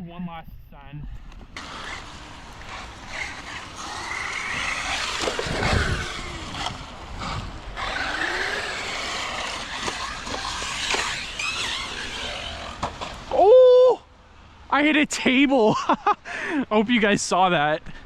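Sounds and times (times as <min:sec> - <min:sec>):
electric motor whining: 0:01.6 - 0:13.3.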